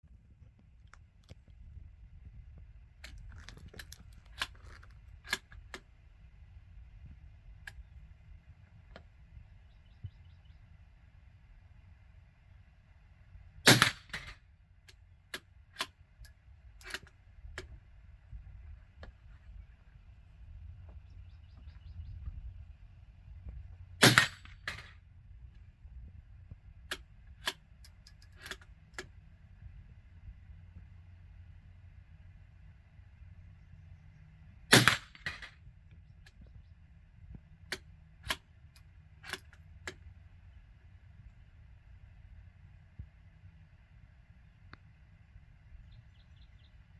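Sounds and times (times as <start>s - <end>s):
sharp metallic clicks of rifle bolt: 3.0s - 5.9s, 13.7s - 17.8s, 26.8s - 29.2s, 34.7s - 35.5s, 37.6s - 40.2s
small sharp clicks: 7.6s - 7.9s
rifle shot: 13.6s - 14.4s, 24.0s - 25.0s, 34.7s - 35.6s.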